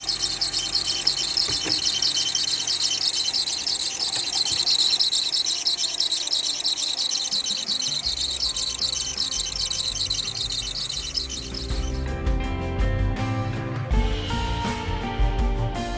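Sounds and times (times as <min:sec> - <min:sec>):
engine drive belt squeaking: 0:00.0 - 0:12.1.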